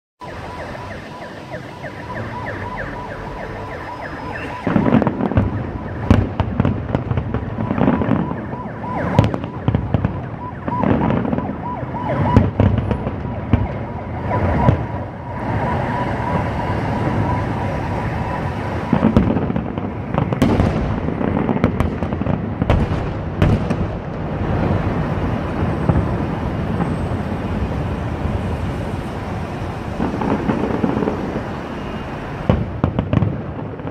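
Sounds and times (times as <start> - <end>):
steady high tone: 0.2 - 4.9
fireworks booming and crackling: 0.4 - 33.9.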